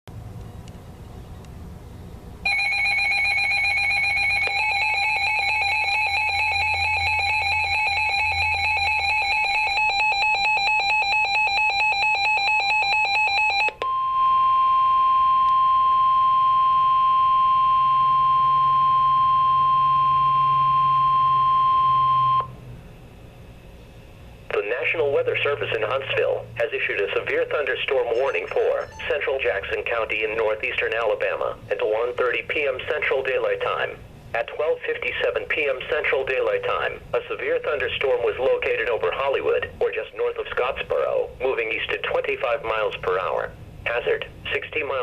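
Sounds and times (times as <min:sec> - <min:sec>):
steady warning alarm tone: 0:02.4 - 0:22.5, 0:27.3 - 0:30.0
rapidly pulsing electronic beeping: 0:28.0 - 0:29.7.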